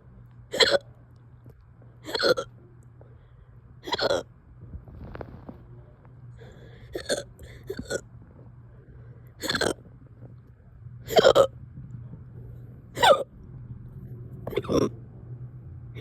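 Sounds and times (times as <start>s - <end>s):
person hiccuping: 0.5s - 0.9s, 2.0s - 2.5s, 3.8s - 4.3s, 6.9s - 8.0s, 9.4s - 9.8s, 11.1s - 11.5s, 13.0s - 13.3s, 14.5s - 14.9s.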